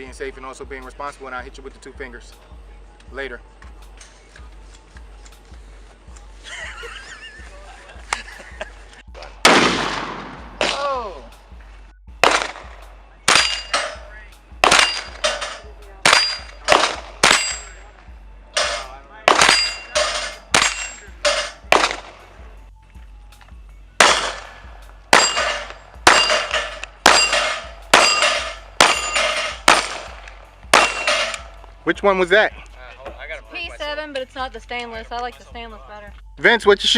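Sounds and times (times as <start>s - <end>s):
pistol shots: 9.4s - 10.9s, 12.2s - 14.0s, 14.6s - 17.9s, 18.6s - 22.4s, 24.0s - 31.6s
metallic ring after shots: 13.3s - 22.2s, 24.0s - 31.5s.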